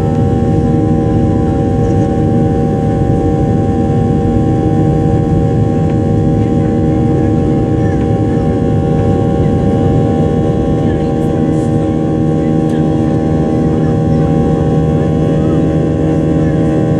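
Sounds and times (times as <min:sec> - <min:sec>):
jet engine cabin rumble: 0:00.0 - 0:16.9
steady engine whine: 0:00.0 - 0:16.9.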